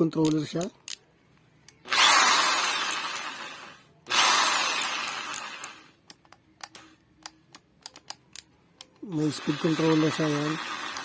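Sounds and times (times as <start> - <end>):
drill spinning up and winding down: 1.9 - 5.9, 9.1 - 11.0.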